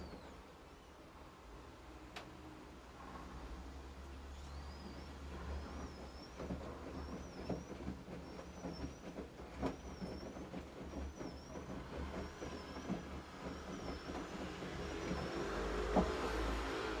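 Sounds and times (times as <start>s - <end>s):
washing machine squeak: 4.4s - 16.8s.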